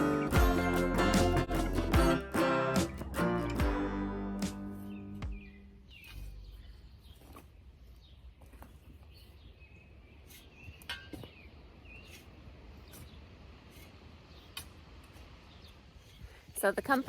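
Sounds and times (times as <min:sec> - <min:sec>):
small birds chirping: 0:04.8 - 0:17.0.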